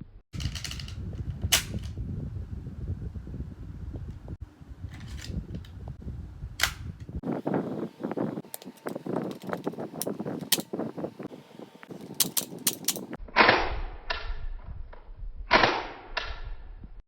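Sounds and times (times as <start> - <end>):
toy pistol shots: 15.5 - 16.4.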